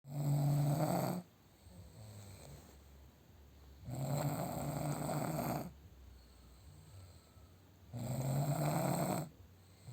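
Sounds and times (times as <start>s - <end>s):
person snoring: 0.1s - 1.3s, 3.8s - 5.7s, 7.9s - 9.9s
quiet breathing: 0.2s - 9.9s.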